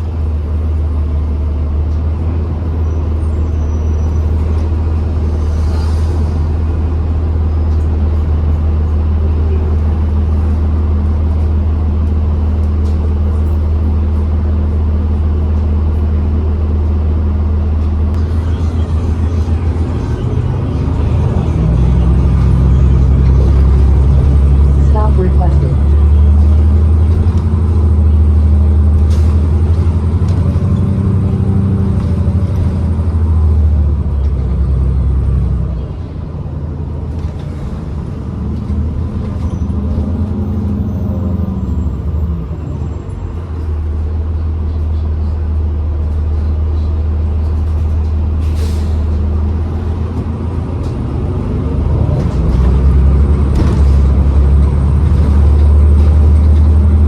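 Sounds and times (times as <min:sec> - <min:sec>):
bus drivetrain hum: 0:00.0 - 0:57.0
air brakes: 0:05.4 - 0:06.6, 0:48.4 - 0:49.2.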